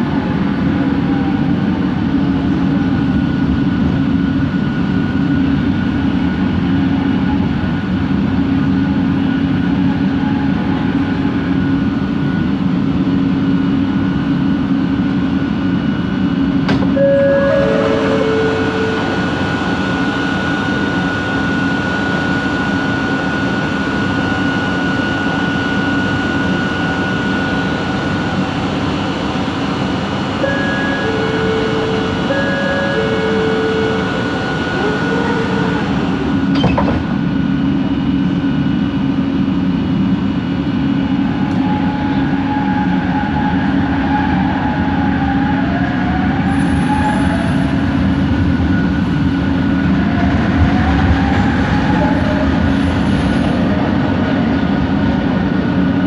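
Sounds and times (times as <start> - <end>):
train rumble and motor hum: 0.0 - 56.0
steady high whine: 14.7 - 36.5
short tones: 16.9 - 20.4, 30.4 - 35.6.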